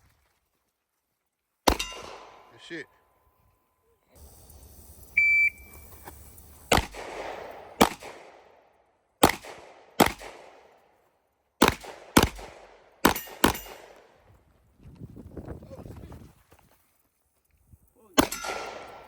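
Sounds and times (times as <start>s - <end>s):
pistol shots with echo: 1.7s - 2.7s, 6.7s - 10.8s, 11.6s - 14.2s, 18.2s - 19.0s
short high electronic beep: 5.1s - 5.8s.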